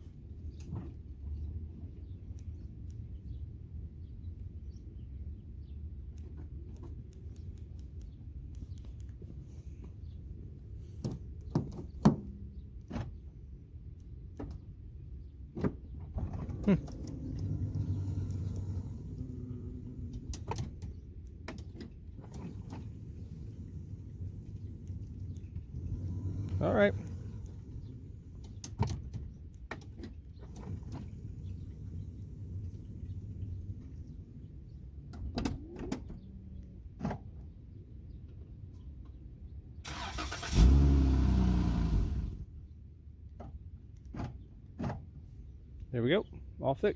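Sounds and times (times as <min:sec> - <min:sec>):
low steady rumble: 0:12.2 - 0:46.6
sliding door motor hum: 0:16.5 - 0:20.6, 0:22.2 - 0:28.5.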